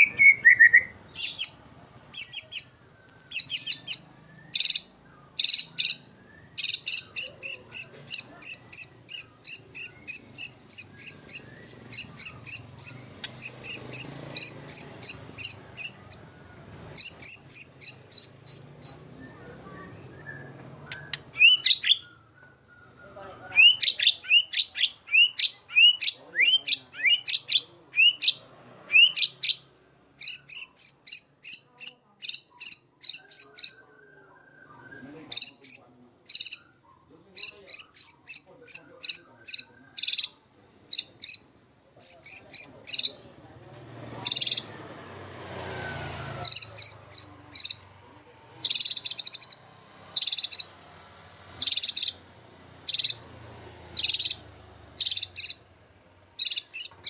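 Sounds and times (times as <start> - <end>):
bird singing whistles and chips: 0.0 - 16.1, 17.0 - 23.0, 23.6 - 33.8, 34.5 - 36.8, 37.4 - 40.3, 44.3 - 44.7, 46.4 - 47.8, 48.7 - 49.6, 51.6 - 52.2, 55.0 - 55.6, 56.4 - 57.0.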